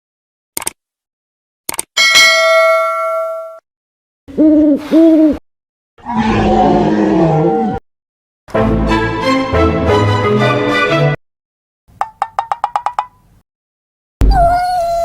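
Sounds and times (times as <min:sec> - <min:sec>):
bell-like ding: 0:02.0 - 0:03.6.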